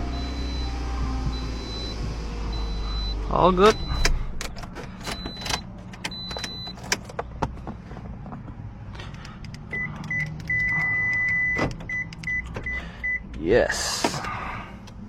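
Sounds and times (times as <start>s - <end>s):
electronic beeps: 0.0s - 4.2s, 9.7s - 13.2s.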